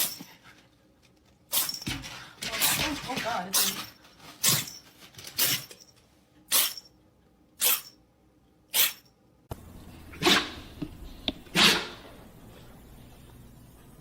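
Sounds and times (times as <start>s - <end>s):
pet sneezing: 8.7s - 9.0s, 10.2s - 10.6s, 11.5s - 12.0s.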